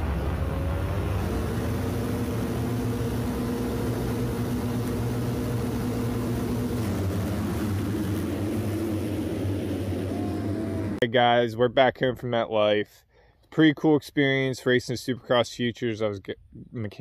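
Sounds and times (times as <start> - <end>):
engine drone with low hum: 0.0 - 11.0.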